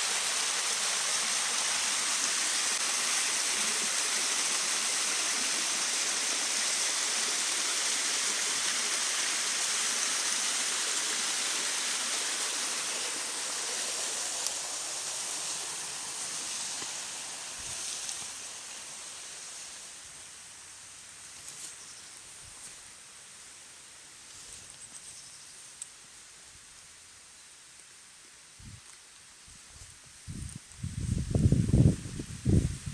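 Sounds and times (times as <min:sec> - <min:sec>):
waterfall rushing: 0:00.0 - 0:17.6.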